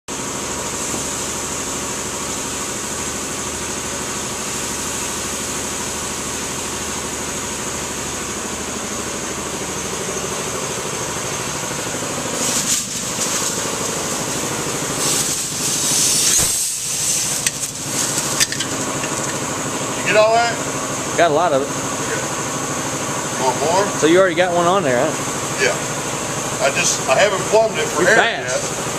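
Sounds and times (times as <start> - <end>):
engine idling: 0.1 - 28.9.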